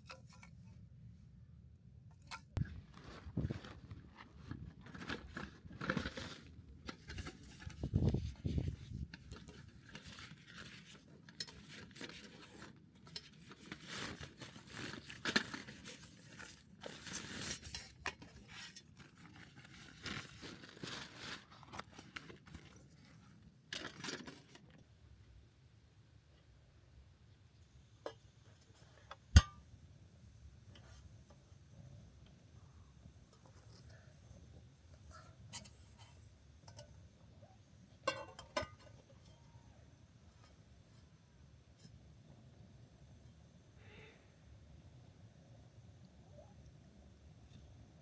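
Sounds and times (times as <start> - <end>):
objects rustling and crinkling: 2.2 - 24.9, 30.7 - 42.0.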